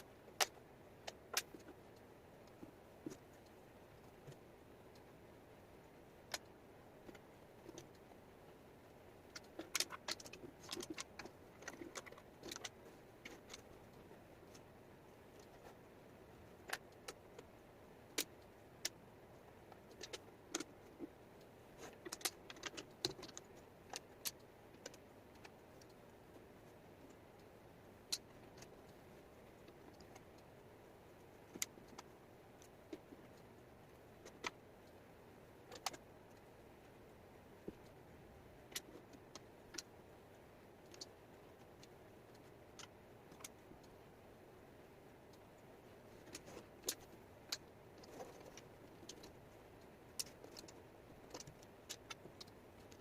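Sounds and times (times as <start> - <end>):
faint steady hiss: 0.0 - 53.0
wooden puzzle pieces clicking: 9.3 - 13.7.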